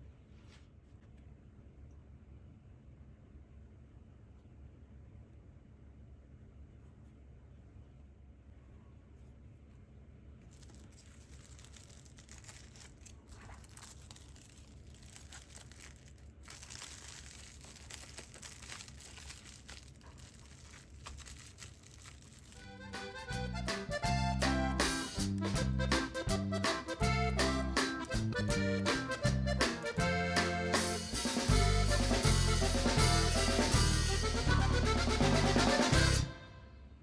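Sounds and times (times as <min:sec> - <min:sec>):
wrapping material crinkling: 0:10.4 - 0:24.0
upbeat accordion-led music: 0:22.6 - 0:36.7.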